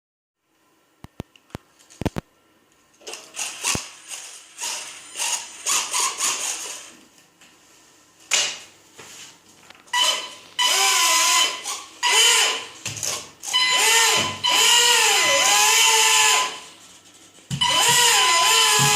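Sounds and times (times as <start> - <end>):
small motors whining: 13.4 - 16.7, 17.6 - 18.9.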